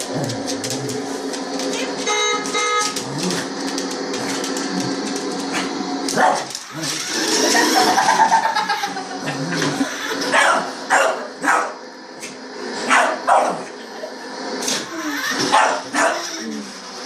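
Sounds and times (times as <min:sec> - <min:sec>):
dog barking: 0:06.2 - 0:06.5, 0:10.3 - 0:11.8, 0:12.9 - 0:13.6, 0:15.5 - 0:16.3.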